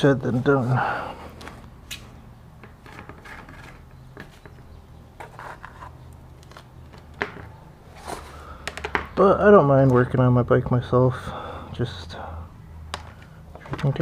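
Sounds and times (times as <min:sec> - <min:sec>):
plastic parts clicking and knocking: 0:06.4 - 0:07.6, 0:08.6 - 0:09.2, 0:12.9 - 0:14.0.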